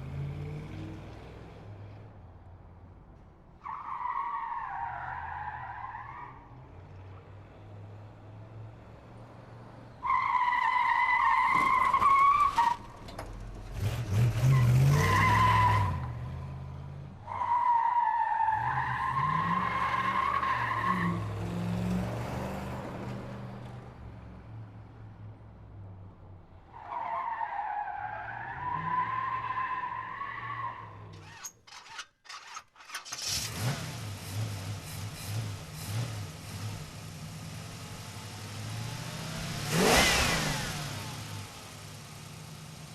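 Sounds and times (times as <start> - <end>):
tire squeals: 3.6 - 6.6, 9.9 - 16.6, 17.2 - 21.4, 26.7 - 33.7.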